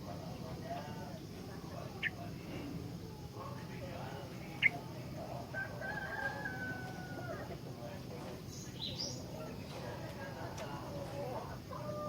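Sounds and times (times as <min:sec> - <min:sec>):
busy background sounds: 0:00.0 - 0:12.0
bird high chirps: 0:08.5 - 0:09.3.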